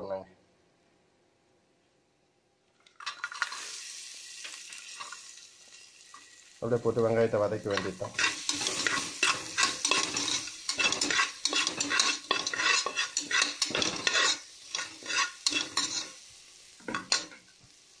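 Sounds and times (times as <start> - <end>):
onions sizzling in a pan: 3.2 - 18.0
spoon scraping a pan: 7.7 - 17.6.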